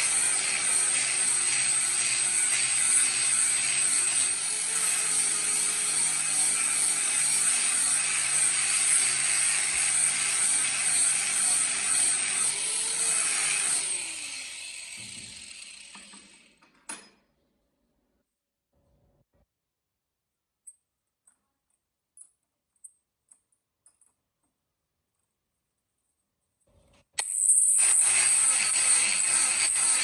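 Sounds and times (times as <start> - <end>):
rotary power tool grinding: 0.0 - 16.6, 27.2 - 30.0.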